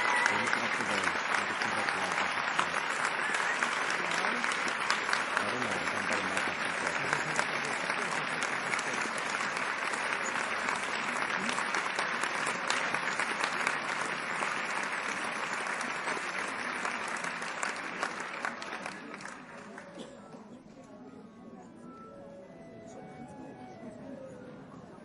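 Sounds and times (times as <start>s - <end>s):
audience applauding: 0.0s - 20.0s.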